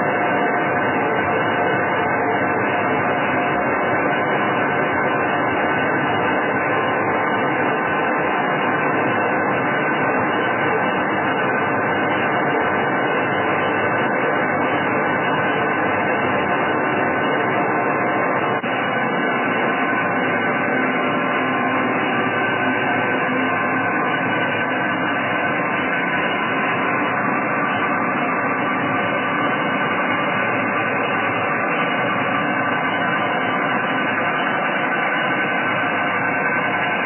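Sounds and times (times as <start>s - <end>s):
grinder machine humming: 14.2s - 37.0s.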